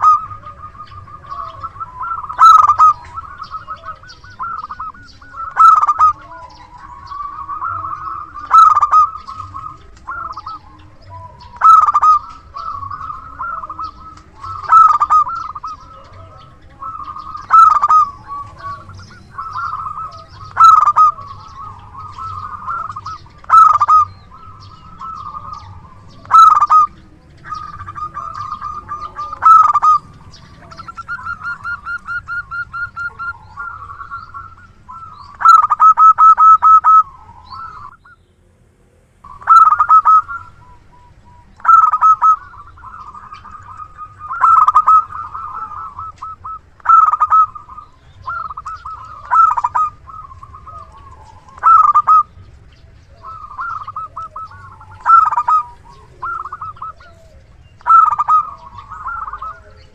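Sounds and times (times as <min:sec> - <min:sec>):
dove cooing: 0:00.0 - 0:59.9.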